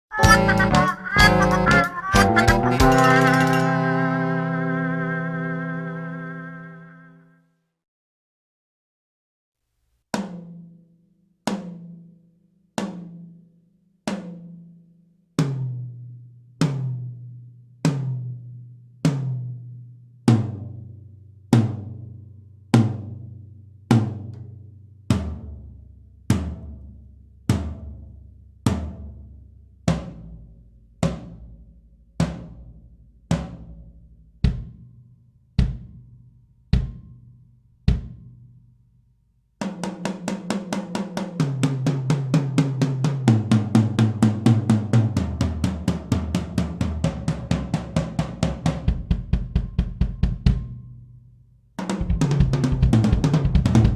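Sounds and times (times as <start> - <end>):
fast snare drum roll: 34.4 - 34.8, 39.6 - 50.7, 51.8 - 53.9.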